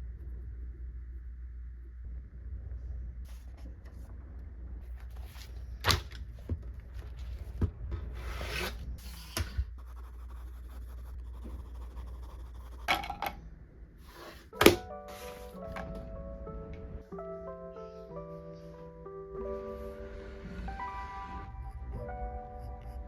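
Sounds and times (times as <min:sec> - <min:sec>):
low steady hum: 0:00.0 - 0:17.2.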